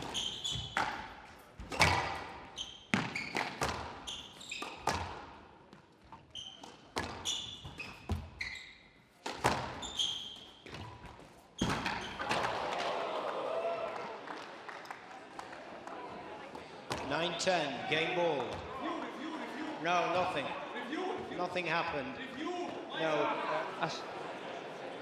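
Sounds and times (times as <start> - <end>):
shoe squeaks on court floor: 0.0 - 5.2, 6.0 - 12.2
squash ball striking rackets and walls: 0.0 - 5.4, 6.5 - 8.5, 9.2 - 12.6.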